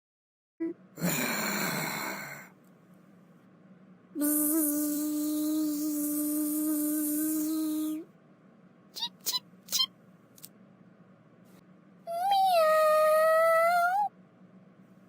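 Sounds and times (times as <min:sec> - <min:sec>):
breathy sigh-like voice: 0:01.0 - 0:02.5
person humming one pitch: 0:04.2 - 0:08.1.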